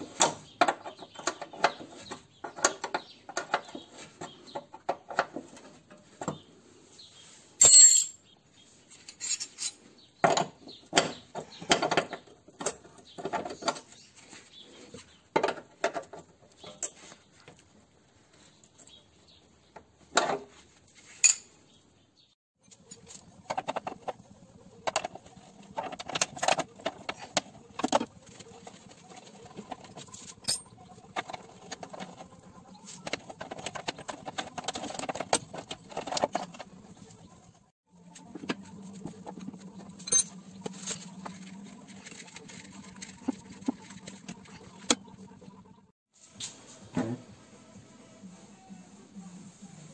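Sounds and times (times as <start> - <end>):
metal tools clinking and knocking: 7.6 - 8.3, 8.9 - 11.1, 21.1 - 21.6, 29.6 - 32.3, 39.8 - 41.1.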